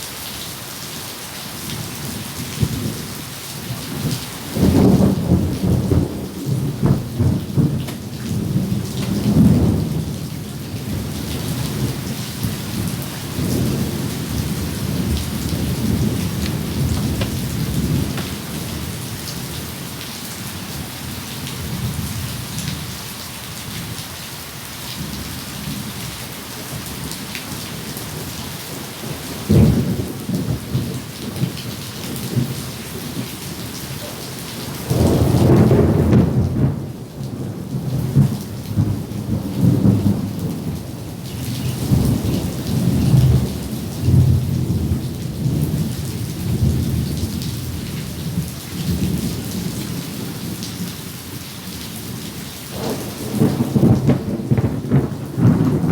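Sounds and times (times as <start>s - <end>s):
heavy rain: 0.0s - 55.9s
rolling thunder: 3.7s - 19.9s, 29.1s - 33.7s, 34.7s - 50.9s, 52.1s - 55.9s.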